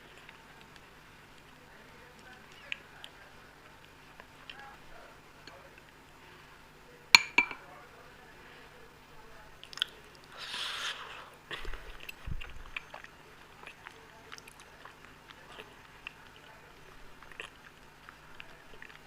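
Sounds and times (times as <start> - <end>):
chewing and biting: 11.6 - 19.0.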